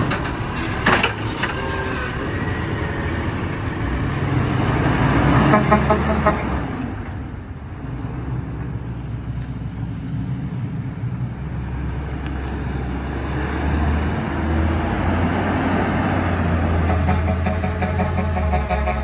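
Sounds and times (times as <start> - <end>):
heavy vehicle engine rumbling: 0.0 - 19.0.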